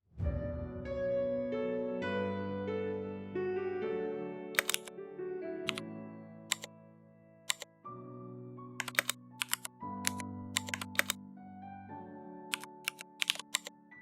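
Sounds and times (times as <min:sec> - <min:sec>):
soft background music: 0:00.2 - 0:14.0
computer keyboard keystrokes: 0:04.6 - 0:04.9, 0:07.5 - 0:07.7, 0:08.8 - 0:11.2, 0:12.5 - 0:13.8.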